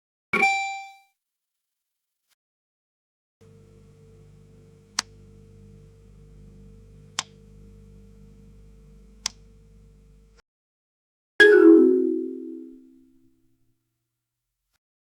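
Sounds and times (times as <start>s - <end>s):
sharp ticks: 7.1s - 7.4s.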